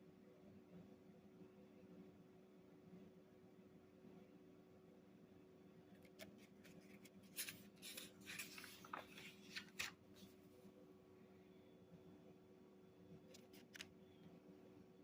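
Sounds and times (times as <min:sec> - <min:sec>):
low steady hum: 0:00.0 - 0:15.0
paper pages rustling: 0:06.0 - 0:10.5, 0:13.3 - 0:13.9.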